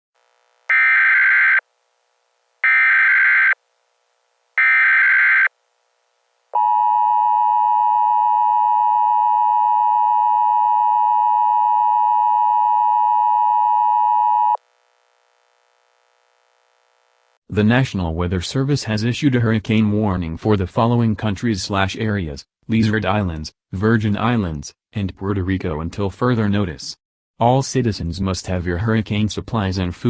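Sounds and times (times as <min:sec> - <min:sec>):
shrill data bursts: 0:00.7 - 0:01.6, 0:02.6 - 0:03.6, 0:04.6 - 0:05.5.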